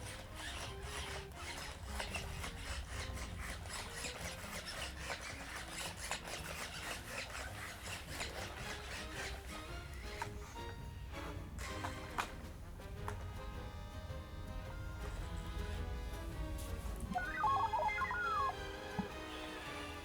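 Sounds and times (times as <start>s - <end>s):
robot dog clicking and scraping: 0.0s - 10.6s.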